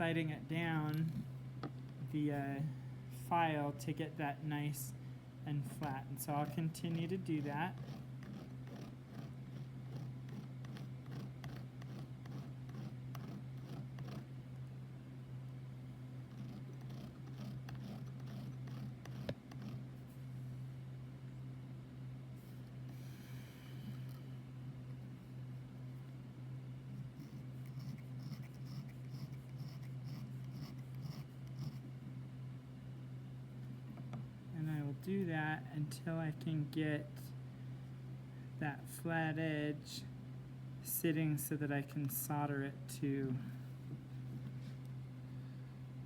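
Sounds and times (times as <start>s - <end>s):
steady low hum: 0.0s - 46.0s
metal scraping on a hand file: 5.7s - 14.3s, 16.3s - 19.9s.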